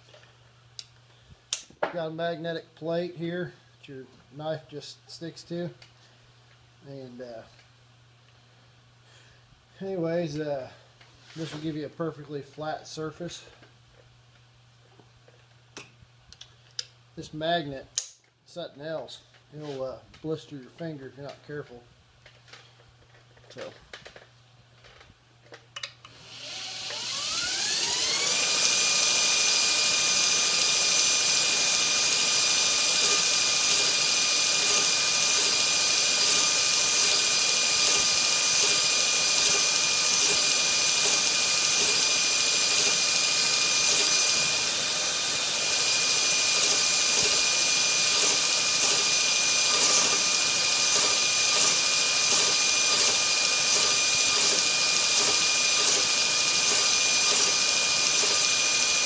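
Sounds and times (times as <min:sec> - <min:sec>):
belt grinder motor whine: 0:26.1 - 0:59.0
belt grinding steel blade: 0:30.2 - 0:59.0.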